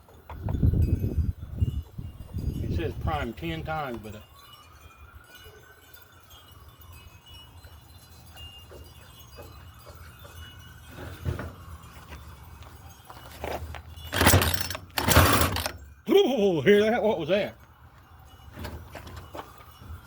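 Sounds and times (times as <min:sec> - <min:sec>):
recoil starter rope pull: 0:14.1 - 0:15.8.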